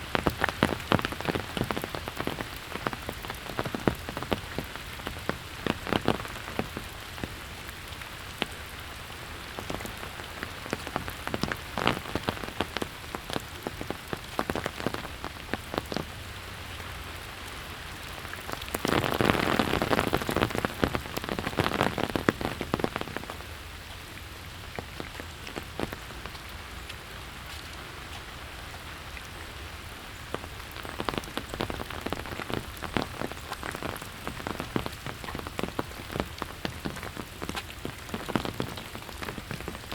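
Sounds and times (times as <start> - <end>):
sharp raindrop ticks: 0.0 - 16.2, 30.2 - 39.9
steady rain falling: 0.0 - 39.9.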